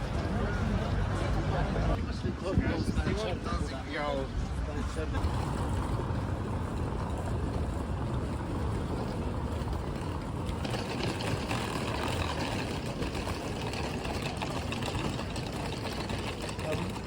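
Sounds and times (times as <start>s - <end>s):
ship engine low rumble: 0.0s - 17.0s.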